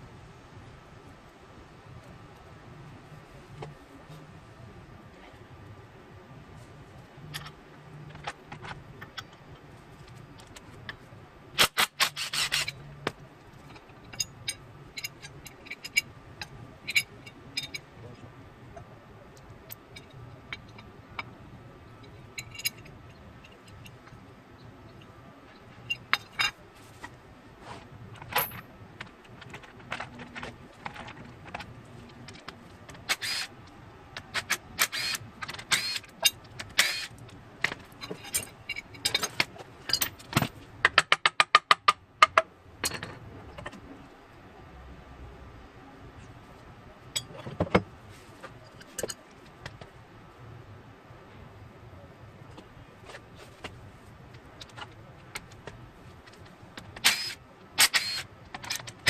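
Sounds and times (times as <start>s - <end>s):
metal tools clinking and clattering: 13.6s - 17.8s, 22.0s - 24.2s, 28.2s - 28.6s, 37.6s - 40.5s.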